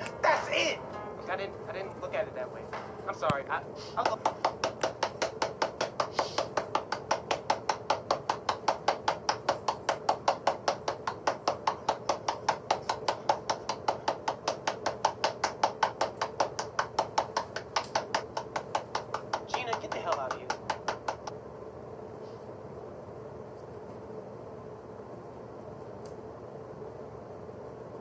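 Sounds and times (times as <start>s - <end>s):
rapid tapping: 0.0s - 21.3s
faint steady hum: 0.0s - 28.0s.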